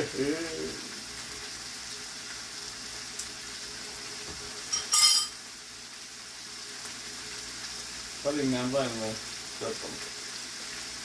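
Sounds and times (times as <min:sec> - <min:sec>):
food sizzling in frying pan: 0:00.0 - 0:11.0
metal utensil clink: 0:04.7 - 0:05.4.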